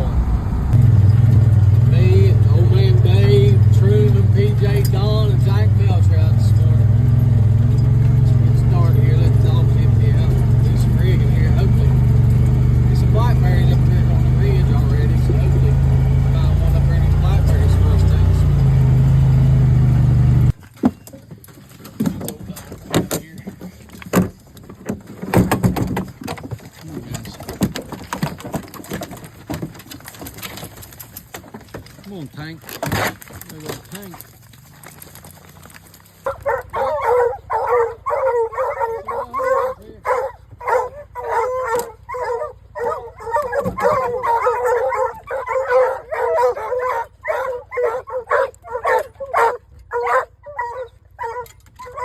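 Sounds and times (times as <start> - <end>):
low rumble: 0.0 - 20.6
dog gear clanking and clicking: 0.7 - 52.0
hounds barking and howling: 2.5 - 19.9, 36.2 - 52.0.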